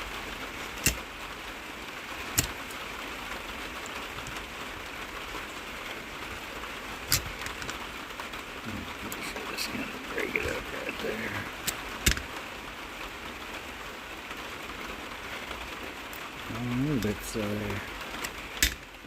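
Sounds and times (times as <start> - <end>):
steady hiss: 0.0 - 19.0
blade clicking on wire: 0.8 - 1.0, 2.3 - 2.8.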